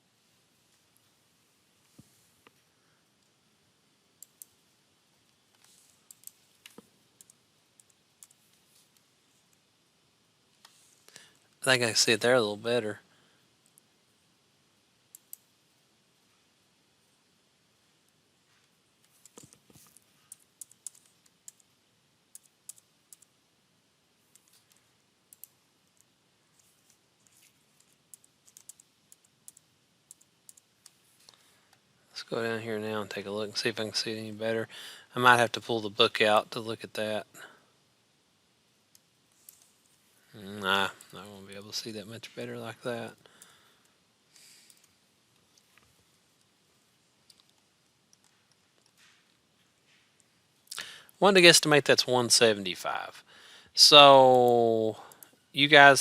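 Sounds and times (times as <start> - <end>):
computer mouse clicks: 4.2 - 4.6, 5.2 - 9.6, 15.1 - 15.5, 18.6 - 23.4, 24.2 - 31.8, 38.9 - 40.0, 44.5 - 46.5, 47.2 - 49.4.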